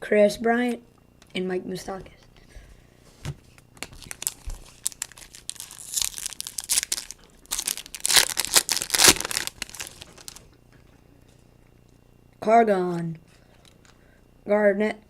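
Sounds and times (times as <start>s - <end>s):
foil wrapper tearing and crinkling: 3.8s - 10.4s.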